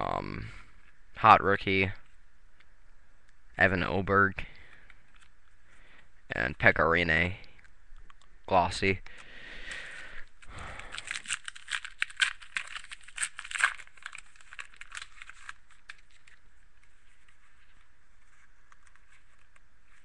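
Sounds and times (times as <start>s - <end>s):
trading cards shuffled: 10.9s - 20.0s.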